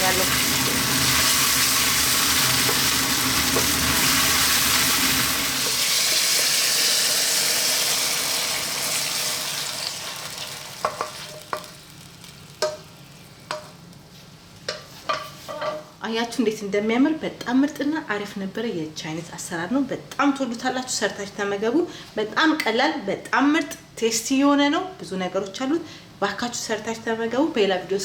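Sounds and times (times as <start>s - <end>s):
sauce sizzling in a frying pan: 0.0s - 14.0s.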